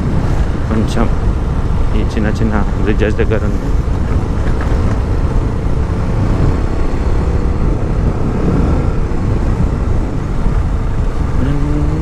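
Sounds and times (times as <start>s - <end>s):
wind noise on microphone: 0.0s - 12.0s
motorcycle engine: 3.2s - 8.0s.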